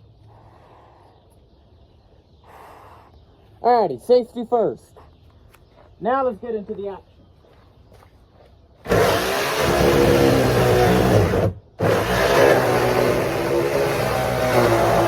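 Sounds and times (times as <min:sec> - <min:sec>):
chainsaw engine running: 0:08.9 - 0:15.0.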